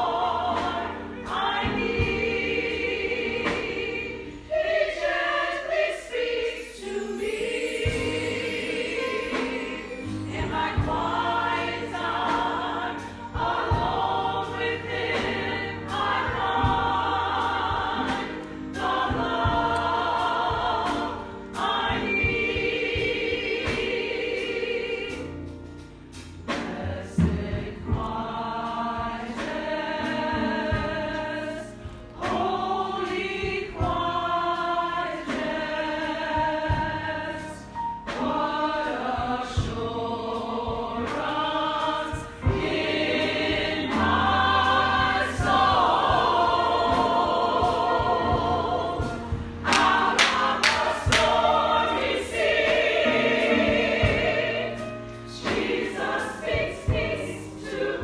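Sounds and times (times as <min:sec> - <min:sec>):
congregation and choir singing: 0:00.0 - 0:58.0
steady beat: 0:42.0 - 0:54.6.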